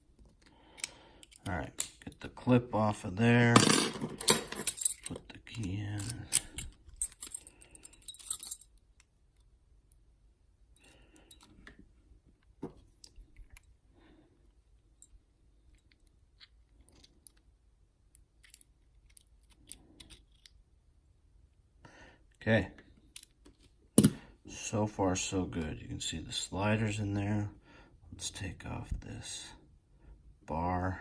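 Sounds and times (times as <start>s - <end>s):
keys jangling: 4.1s - 5.2s, 5.9s - 8.7s.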